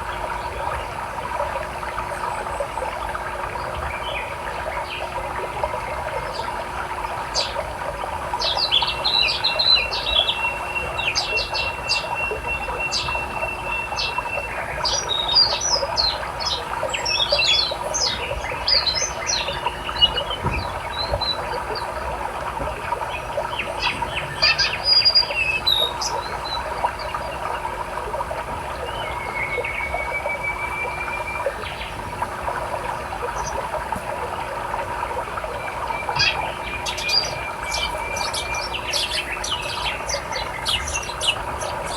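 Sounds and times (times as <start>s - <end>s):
flowing river water: 0.0s - 41.9s
small birds chirping and trilling: 8.3s - 22.2s, 22.9s - 27.6s, 32.9s - 33.8s, 35.5s - 41.9s.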